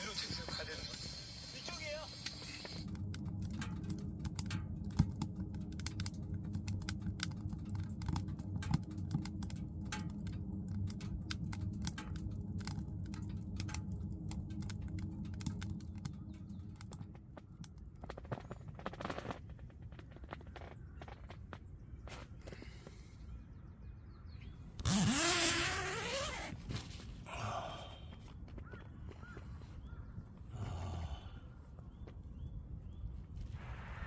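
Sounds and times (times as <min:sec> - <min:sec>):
wood fire crackling and popping: 0:00.0 - 0:22.8
low steady hum: 0:00.0 - 0:34.0.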